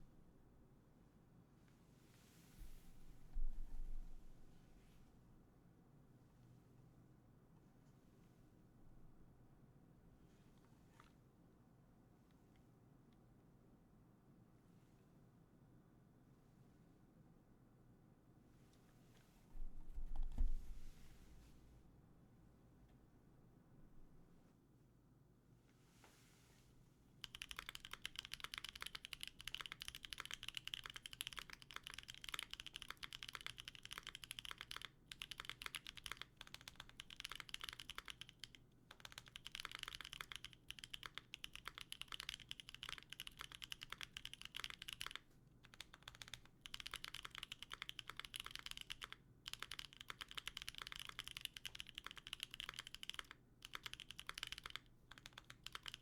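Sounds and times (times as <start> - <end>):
fast typing on mechanical keyboard: 27.2 - 56.0.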